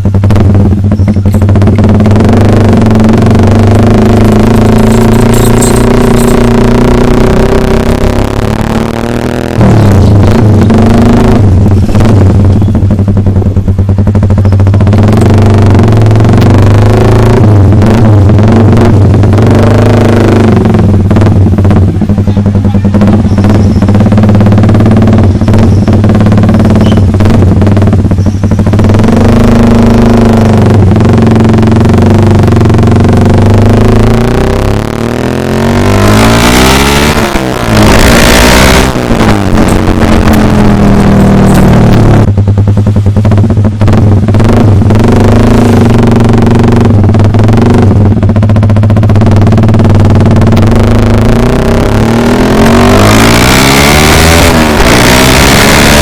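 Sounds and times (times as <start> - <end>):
motorcycle engine running loud: 0.0 - 56.0
rushing noise: 33.8 - 48.2.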